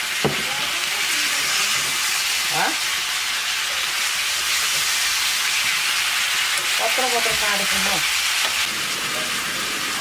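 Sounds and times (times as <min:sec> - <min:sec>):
chicken sizzling in hot oil: 0:00.0 - 0:10.0.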